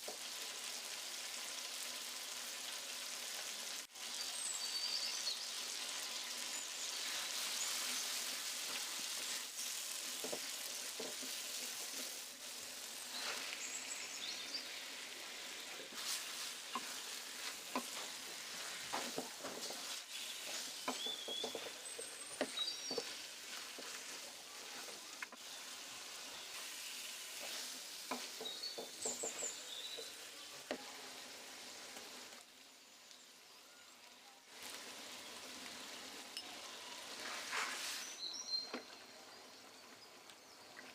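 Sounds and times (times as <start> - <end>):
food sizzling in a pan: 0.0 - 40.9
spatula scraping a pan: 6.8 - 30.2, 37.1 - 38.2.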